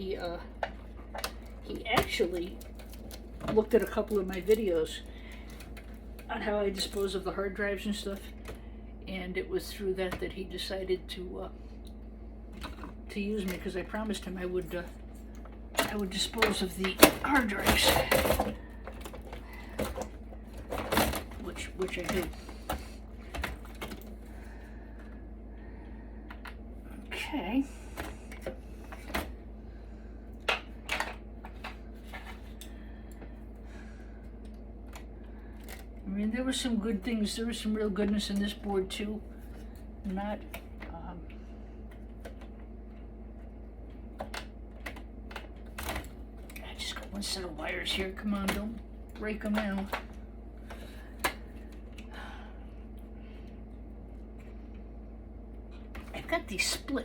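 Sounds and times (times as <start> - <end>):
wires rustling: 0.0 - 8.6, 12.5 - 25.2
faint steady hum: 0.0 - 57.0.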